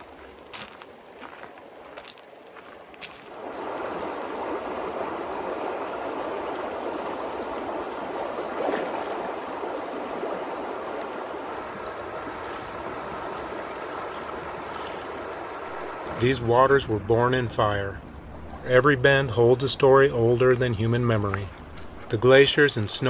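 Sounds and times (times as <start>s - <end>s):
river water rushing: 0.0s - 17.0s.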